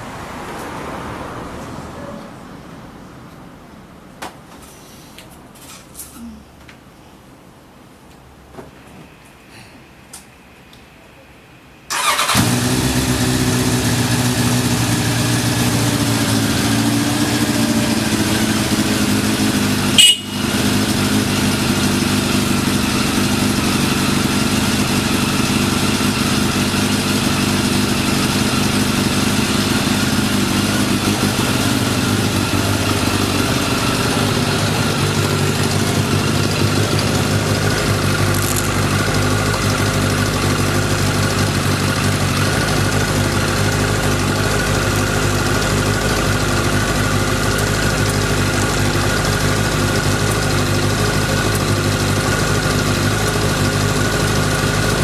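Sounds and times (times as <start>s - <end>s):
loud engine burst: 11.9s - 14.5s
motorcycle engine starting and idling: 11.9s - 55.0s.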